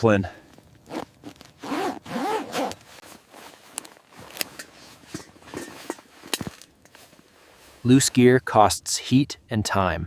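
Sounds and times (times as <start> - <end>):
zipper pulled quickly: 0.9 - 2.9.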